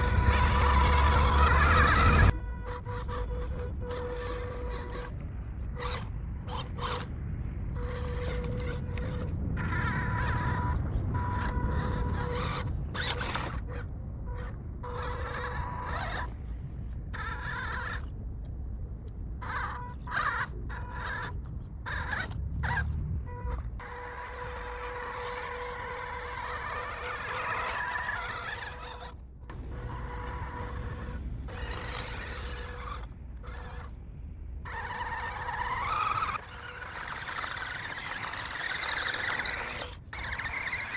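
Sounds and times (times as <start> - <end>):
electric motor whining: 0.0 - 7.1, 7.7 - 18.1, 19.4 - 34.0, 34.6 - 40.9.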